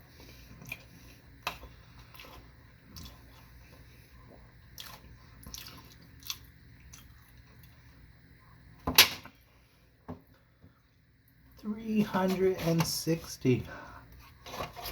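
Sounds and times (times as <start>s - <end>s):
person chewing with wet smacks: 0.2s - 7.8s.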